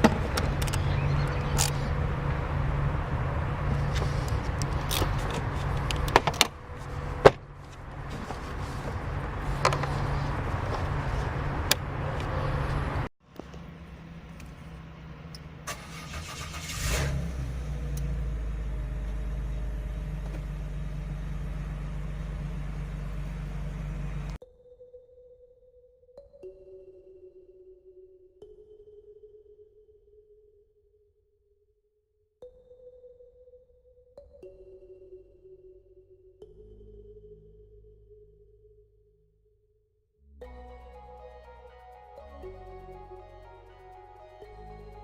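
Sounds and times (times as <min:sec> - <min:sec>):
engine cranking and starting: 0:00.0 - 0:02.5, 0:03.6 - 0:12.9, 0:15.6 - 0:24.4
car engine running: 0:00.0 - 0:24.4
sharp clicks: 0:00.3 - 0:01.9.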